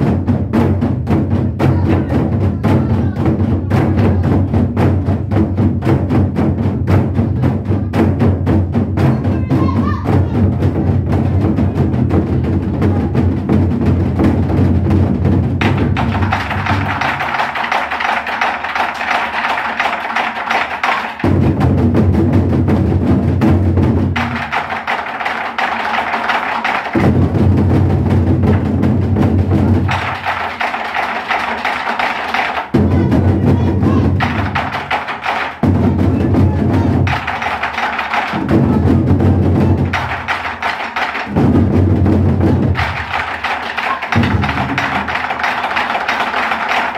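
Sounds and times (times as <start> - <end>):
deep drum strokes: 21.2 - 24.6, 26.9 - 30.4, 35.6 - 45.3.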